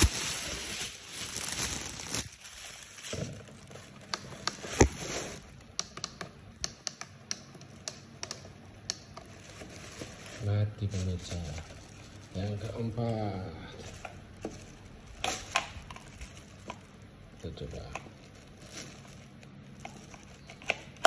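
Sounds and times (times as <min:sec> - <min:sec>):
small sharp clicks and taps: 0:05.7 - 0:09.2.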